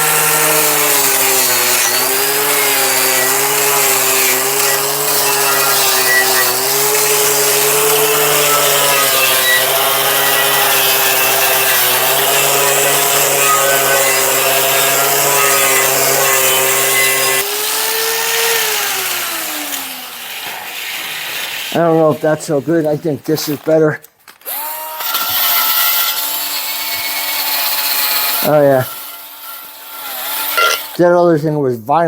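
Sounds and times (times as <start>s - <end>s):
abrasive wheel rubbing metal: 0.0s - 19.6s, 25.4s - 31.0s
power tool motor hum: 0.0s - 21.8s, 24.4s - 31.0s.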